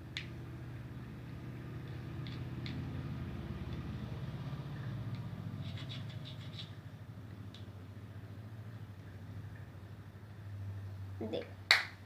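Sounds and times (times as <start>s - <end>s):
steady low hum: 0.0s - 12.0s
tool scraping makeup powder: 5.6s - 6.8s.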